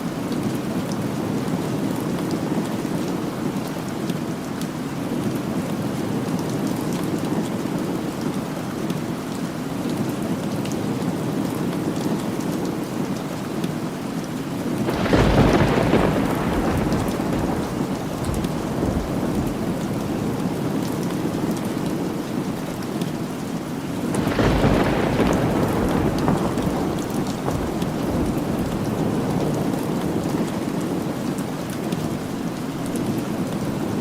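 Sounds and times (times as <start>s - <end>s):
steady rain falling: 0.0s - 34.0s
rolling thunder: 14.9s - 21.7s, 24.2s - 30.7s.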